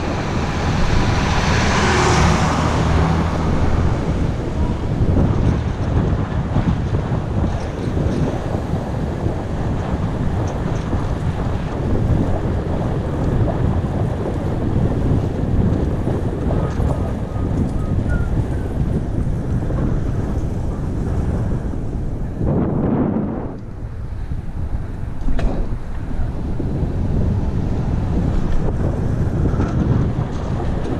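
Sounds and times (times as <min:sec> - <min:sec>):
wind buffeting microphone: 0:00.0 - 0:30.9.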